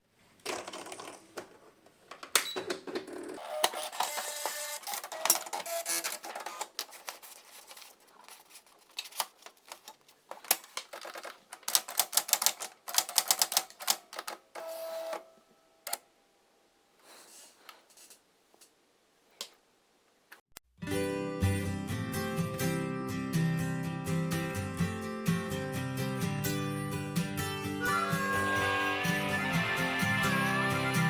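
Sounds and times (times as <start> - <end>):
typewriter keystrokes: 10.5 - 14.4.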